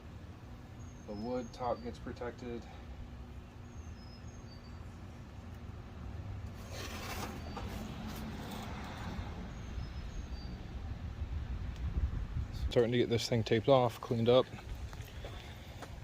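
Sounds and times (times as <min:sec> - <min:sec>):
scratchy strokes and clicks: 0:06.5 - 0:09.1
steady low rumble: 0:09.4 - 0:16.0.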